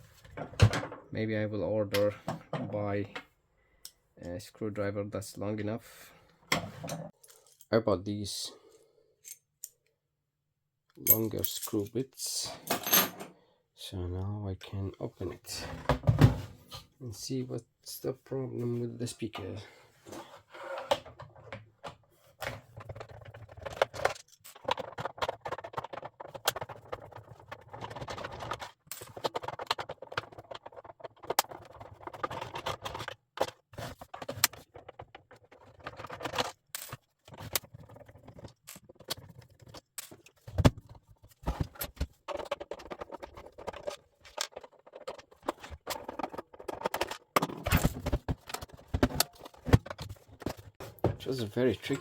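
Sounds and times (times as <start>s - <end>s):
plastic case clicking and scraping: 20.1s - 52.0s.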